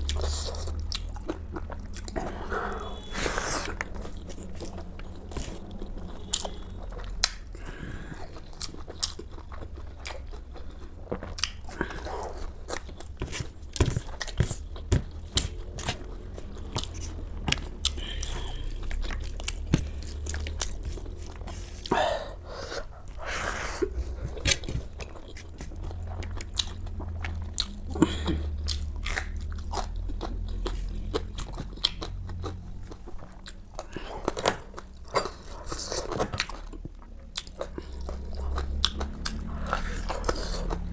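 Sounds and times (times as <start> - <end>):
person chewing crunchy food: 0.0 - 40.9.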